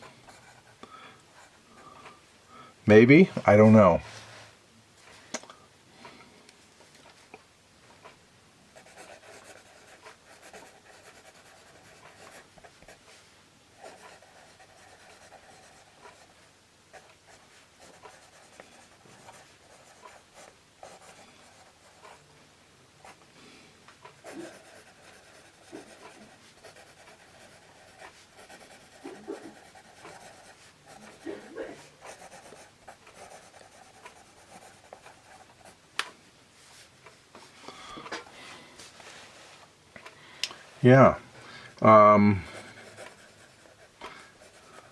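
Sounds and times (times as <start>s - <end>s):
pencil scratching on paper: 0.3s - 0.8s, 8.8s - 13.1s, 13.8s - 22.2s, 24.2s - 35.8s, 42.6s - 44.9s.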